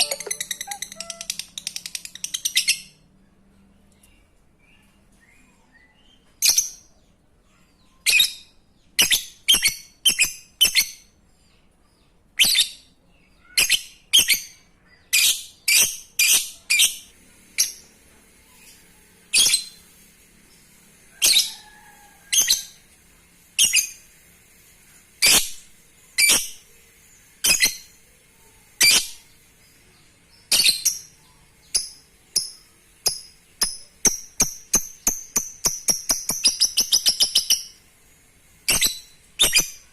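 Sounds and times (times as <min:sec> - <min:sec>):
bird chirping and trilling: 0:00.0 - 0:03.0, 0:28.6 - 0:39.9.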